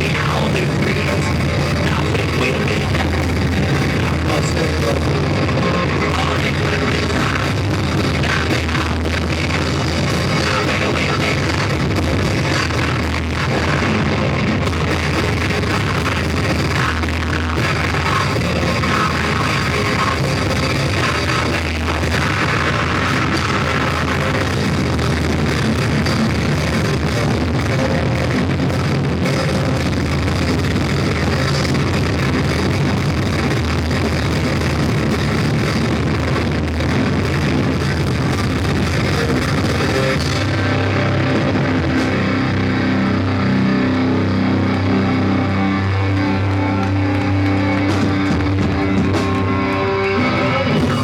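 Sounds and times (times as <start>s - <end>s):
live rock band playing: 0.0s - 51.0s.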